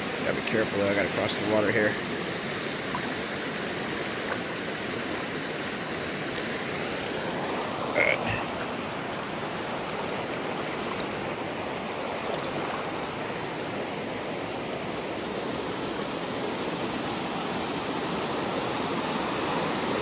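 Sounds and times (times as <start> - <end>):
waterfall and creek rushing: 0.0 - 20.0.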